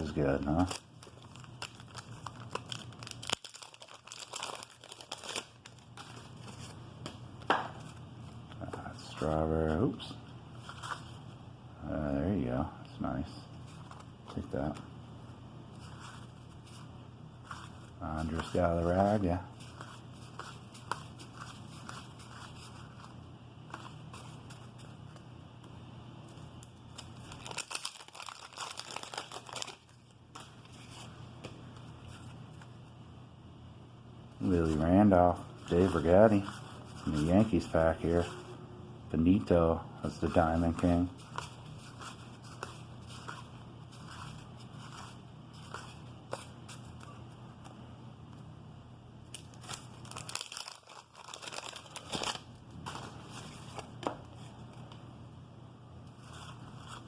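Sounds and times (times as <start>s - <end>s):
paper wrappers crinkling: 0.0s - 6.8s, 26.3s - 31.1s, 34.4s - 38.3s, 40.1s - 47.2s, 49.3s - 54.9s
paper pack tearing and crinkling: 0.2s - 6.5s, 27.0s - 30.0s, 49.3s - 53.9s.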